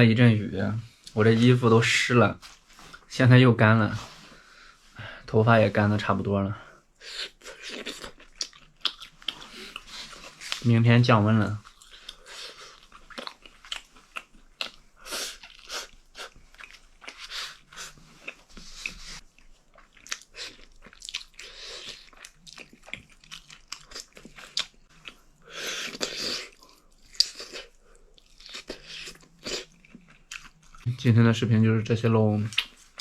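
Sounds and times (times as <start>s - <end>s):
person chewing food: 7.0s - 10.7s, 11.6s - 30.9s, 32.5s - 33.0s.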